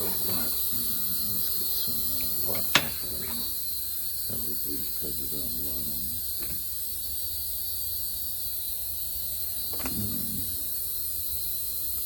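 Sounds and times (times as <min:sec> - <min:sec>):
electrical mains hum: 0:00.0 - 0:12.0
low murmur of voice: 0:09.8 - 0:10.7.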